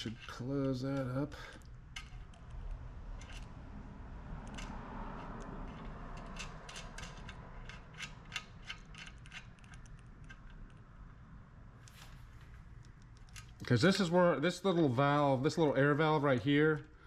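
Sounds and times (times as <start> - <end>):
small metallic clicks and taps: 4.4 - 10.9, 12.8 - 13.7.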